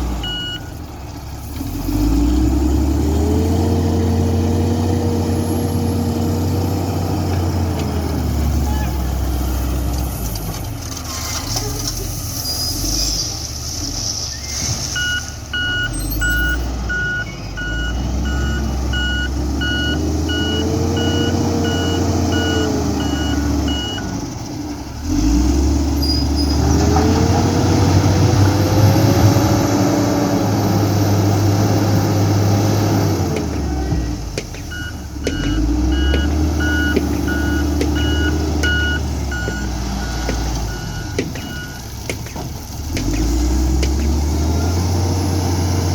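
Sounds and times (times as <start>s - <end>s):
diesel engine revving: 0.0s - 45.9s
reversing alarm beeping: 0.2s - 0.8s, 14.9s - 24.2s, 34.7s - 41.9s.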